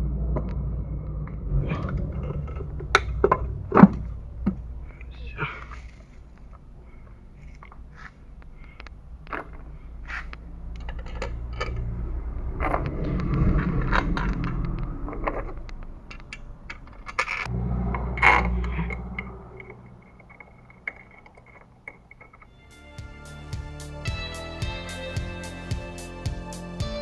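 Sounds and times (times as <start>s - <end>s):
low rumbling: 0.0s - 22.7s
metal parts clinking and scraping: 9.3s - 12.0s, 13.8s - 17.5s, 18.2s - 22.6s.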